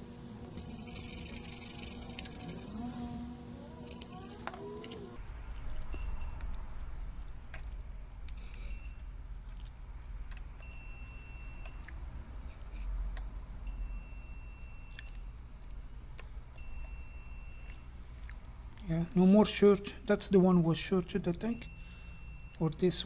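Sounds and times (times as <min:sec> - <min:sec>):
multimeter continuity beeps: 0:16.6 - 0:17.8.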